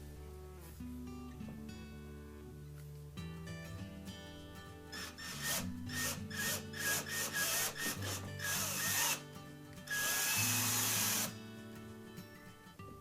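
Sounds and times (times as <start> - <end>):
power drill drilling into wall: 5.0 - 9.2, 9.9 - 11.4.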